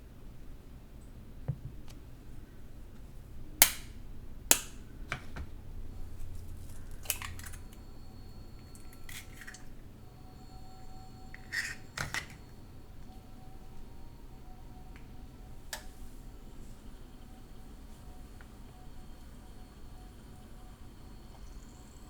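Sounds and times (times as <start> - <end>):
kitchen utensils clicking and tapping: 6.7 - 7.8, 8.7 - 9.7, 11.3 - 12.4.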